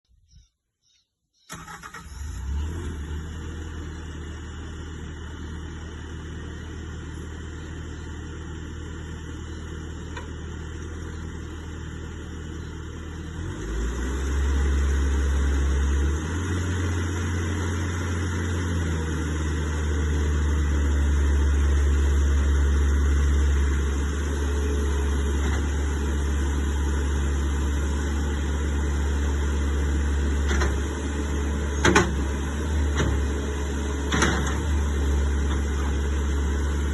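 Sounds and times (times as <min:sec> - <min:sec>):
diesel engine idling and revving: 0:01.5 - 0:36.9.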